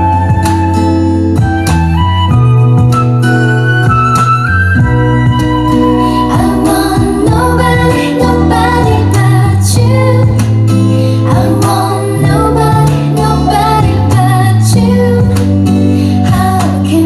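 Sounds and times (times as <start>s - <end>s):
bass line: 0.0s - 17.0s
guitar: 0.0s - 17.0s
regular beat: 0.0s - 17.0s
woman singing: 6.0s - 17.0s.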